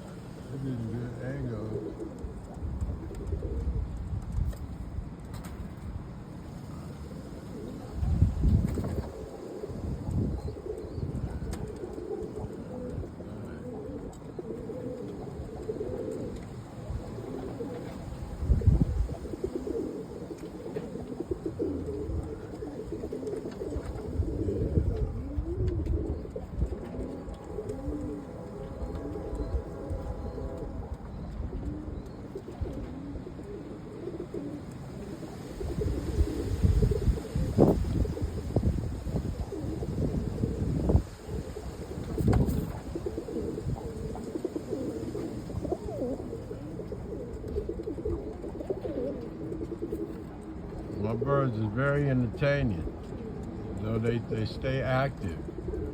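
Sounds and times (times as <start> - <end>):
pigeons cooing: 0.0 - 55.9.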